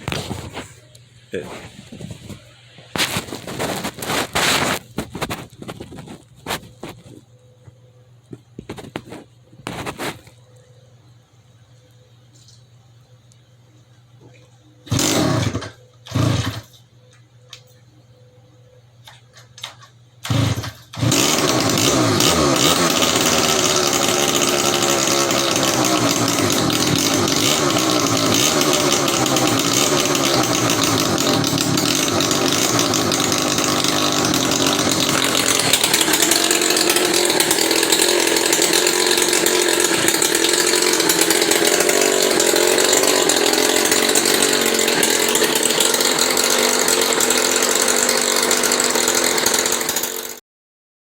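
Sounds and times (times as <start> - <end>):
two-stroke engine running: 14.9 - 16.7, 20.2 - 50.4.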